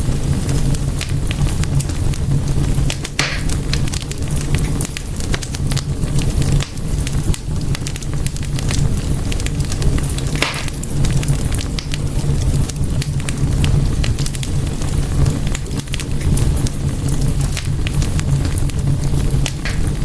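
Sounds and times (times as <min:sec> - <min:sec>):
fire crackling and popping: 0:00.0 - 0:20.0
fire hissing: 0:00.0 - 0:20.0
low rumble of flames: 0:00.0 - 0:20.0.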